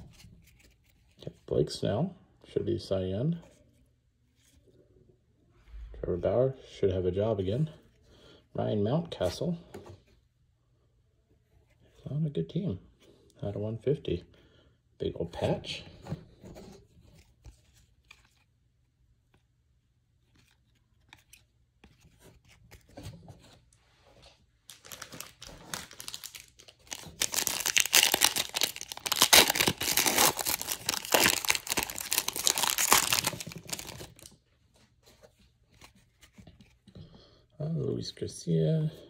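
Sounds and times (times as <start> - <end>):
foil wrapper tearing and crinkling: 24.7 - 34.2.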